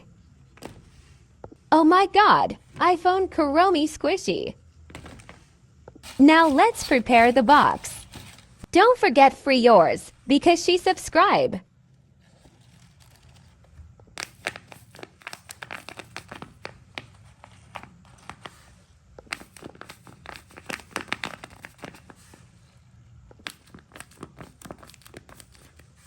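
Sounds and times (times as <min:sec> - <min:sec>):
paper crinkling and rustling: 0:04.9 - 0:08.7, 0:12.1 - 0:22.7, 0:23.3 - 0:26.0.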